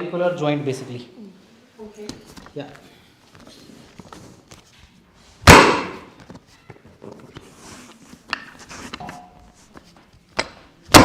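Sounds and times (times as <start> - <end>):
loud slam on treatment table: 5.4 - 6.1.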